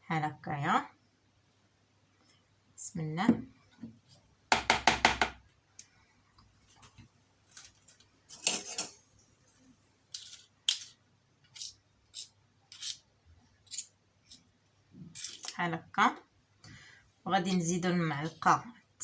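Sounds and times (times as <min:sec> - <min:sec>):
spoon scraping thick honey: 0:11.5 - 0:13.0, 0:15.1 - 0:15.6.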